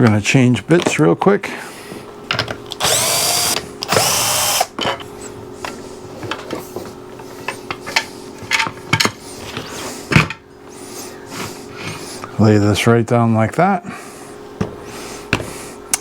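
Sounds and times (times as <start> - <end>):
faint steady hum: 0.0 - 16.0
cordless drill motor spinning: 2.8 - 4.7.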